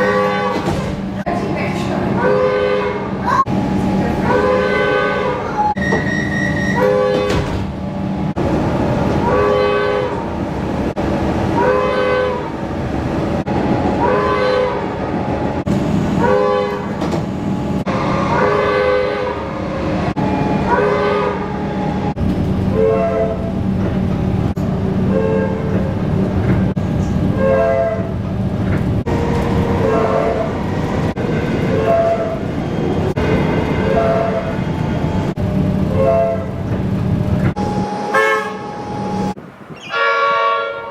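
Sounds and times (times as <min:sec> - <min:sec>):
train horn short blasts: 0:00.0 - 0:00.7, 0:02.2 - 0:03.1, 0:04.3 - 0:07.4, 0:09.2 - 0:10.2, 0:11.6 - 0:12.5, 0:14.0 - 0:14.8, 0:16.2 - 0:17.0, 0:18.3 - 0:19.4, 0:20.2 - 0:21.5, 0:37.6 - 0:39.2, 0:39.8 - 0:40.9
rolling rail noise: 0:00.0 - 0:40.9.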